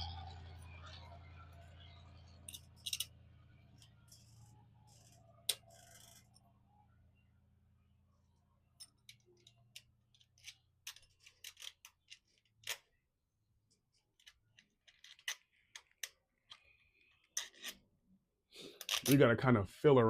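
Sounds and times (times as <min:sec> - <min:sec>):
small metal clicks and taps: 0:02.5 - 0:03.1, 0:08.8 - 0:13.0.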